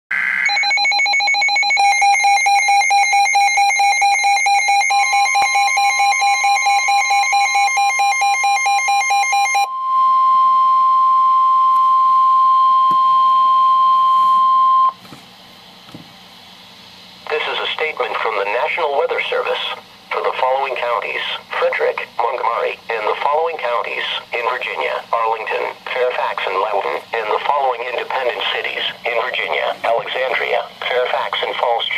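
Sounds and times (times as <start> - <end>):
steady warning alarm tone: 0.1 - 15.0
broadcast voice speaking: 17.3 - 31.9.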